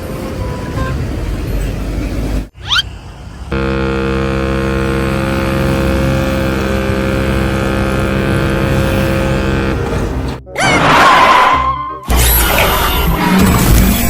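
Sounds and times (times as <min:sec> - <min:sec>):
vehicle engine running: 0:02.3 - 0:10.4.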